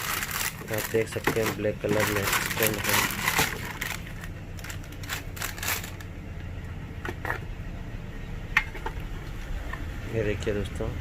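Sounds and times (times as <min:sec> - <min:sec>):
packaging crinkling and rustling: 0:00.0 - 0:06.1.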